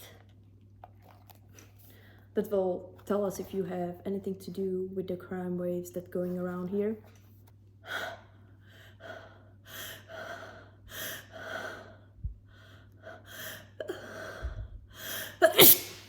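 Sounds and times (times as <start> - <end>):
woman gasping breaths: 7.9 - 15.5
woman sneezing: 15.4 - 16.0.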